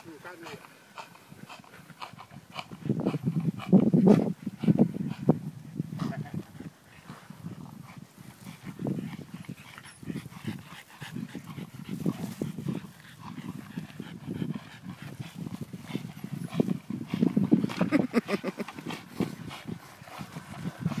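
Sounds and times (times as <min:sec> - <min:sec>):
dog breathing hard: 0:00.0 - 0:21.0.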